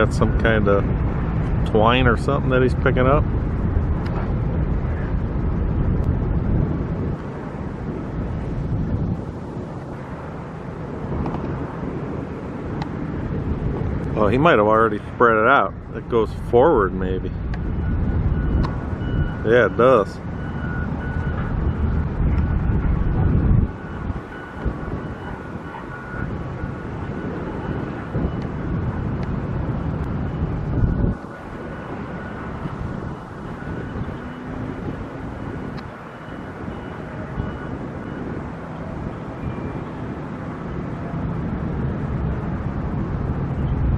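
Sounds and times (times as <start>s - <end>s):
steady low rumble: 0.0s - 43.9s
wind buffeting microphone: 0.0s - 43.9s.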